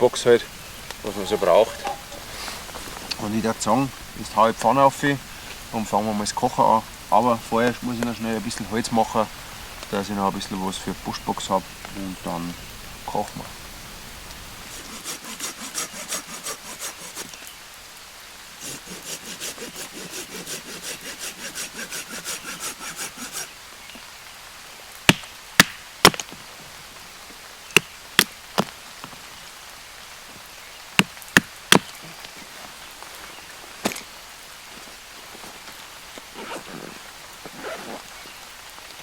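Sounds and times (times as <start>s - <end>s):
hand saw cutting wood: 14.7s - 17.4s, 18.6s - 23.5s
sharp wooden knocks: 25.1s - 26.2s, 31.0s - 31.9s.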